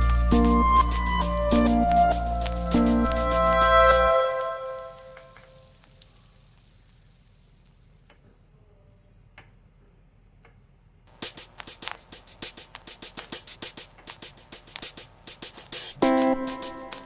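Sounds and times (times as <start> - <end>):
background music: 0.0 - 5.5, 15.9 - 17.0
music with clicking beats: 0.0 - 5.5, 11.1 - 17.0
fish sizzling in a pan: 0.1 - 8.1.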